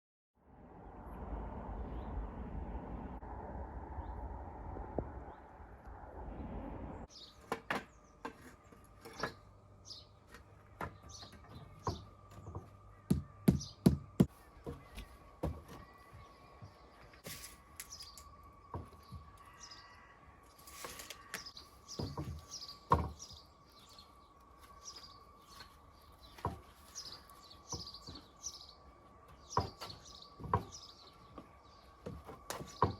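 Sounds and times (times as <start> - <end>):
steady rushing noise: 0.4 - 7.1
birds chirping: 5.2 - 32.9
sharp knocks and clunks: 7.4 - 9.5, 10.3 - 15.9, 21.3 - 23.4, 26.3 - 28.5, 29.3 - 32.9.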